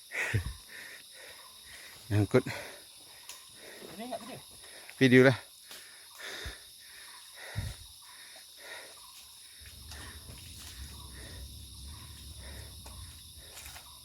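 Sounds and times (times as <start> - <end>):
crickets droning: 0.0 - 14.0
low rumble: 9.7 - 13.5.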